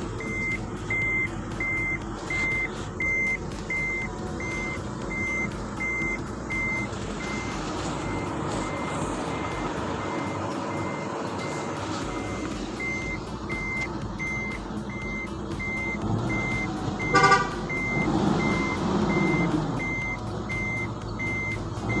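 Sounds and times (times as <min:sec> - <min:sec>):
vehicle running noise: 0:00.0 - 0:22.0
electronic warning beeper: 0:00.2 - 0:22.0
loud horn tone: 0:17.1 - 0:17.7.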